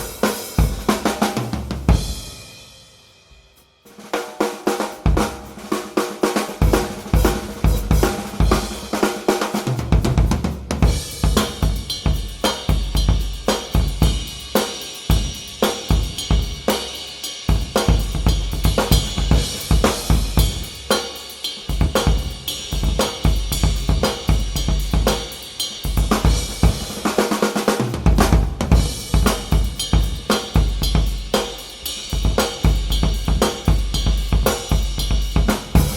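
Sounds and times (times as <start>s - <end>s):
hi-hats: 0.0s - 1.5s, 10.8s - 27.5s, 28.6s - 35.9s
bass drum: 0.0s - 2.5s, 5.1s - 5.7s, 6.5s - 16.8s, 17.5s - 21.0s, 21.7s - 27.2s, 27.8s - 35.9s
snare drum: 0.0s - 2.8s, 3.6s - 35.9s
ride and crash cymbals: 0.0s - 35.9s.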